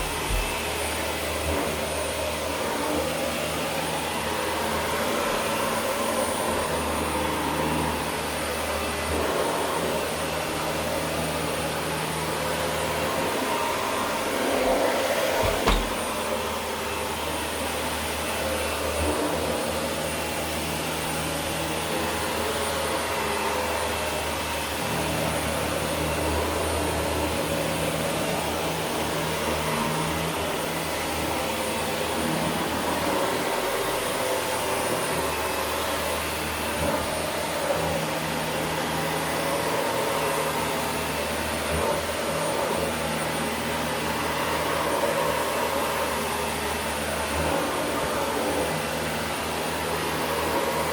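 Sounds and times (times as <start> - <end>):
vacuum cleaner on carpet: 0.0 - 50.9
short knock: 15.4 - 16.0.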